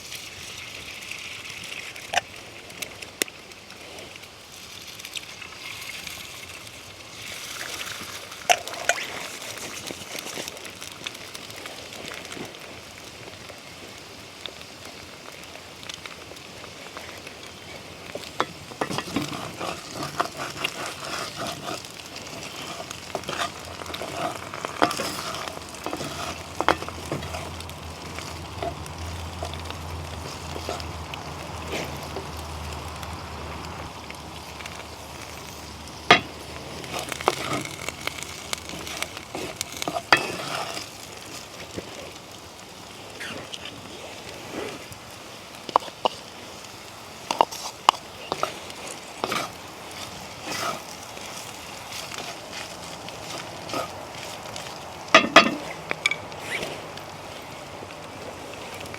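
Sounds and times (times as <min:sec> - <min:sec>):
food sizzling in a pan: 0:00.0 - 0:56.7
utensil scraping a pan: 0:17.6 - 0:32.4, 0:34.7 - 0:41.9, 0:47.2 - 0:54.4, 0:55.2 - 0:56.8.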